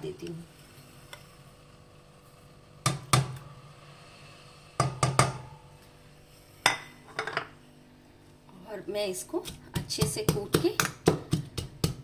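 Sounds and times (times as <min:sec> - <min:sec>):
pestle striking in a mortar: 0:09.4 - 0:12.0.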